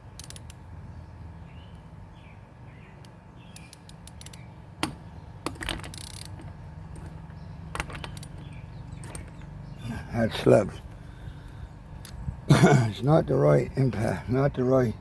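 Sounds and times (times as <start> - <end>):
metallic socket clicks: 0.1 - 0.6, 3.0 - 5.0.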